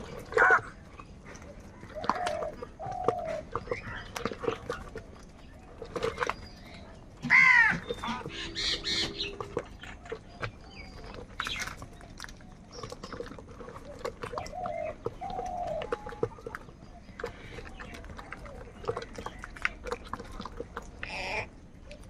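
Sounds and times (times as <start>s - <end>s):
crows cawing: 7.2s - 9.3s.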